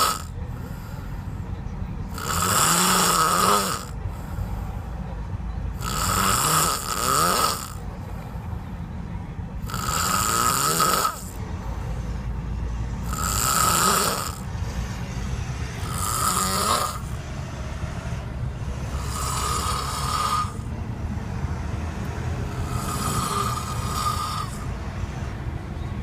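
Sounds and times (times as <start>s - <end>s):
man snoring: 0.0s - 1.0s, 2.1s - 4.0s, 5.8s - 7.8s, 9.6s - 11.4s, 13.0s - 14.4s, 15.8s - 17.2s, 18.8s - 20.7s, 22.5s - 24.7s
continuous low rumble: 0.0s - 26.0s.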